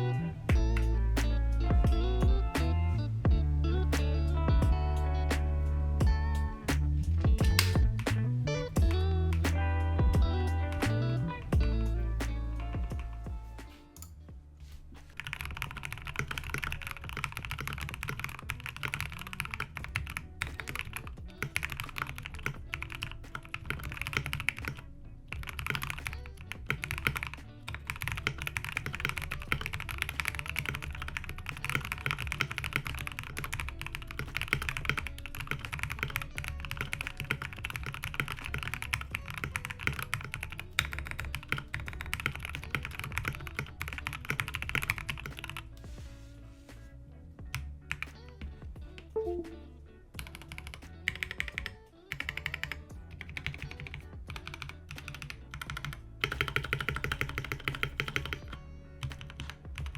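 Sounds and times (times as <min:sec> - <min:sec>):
background music: 0:00.0 - 0:59.9
mechanical keyboard typing: 0:15.2 - 0:24.8, 0:25.4 - 0:45.6, 0:50.2 - 0:59.9.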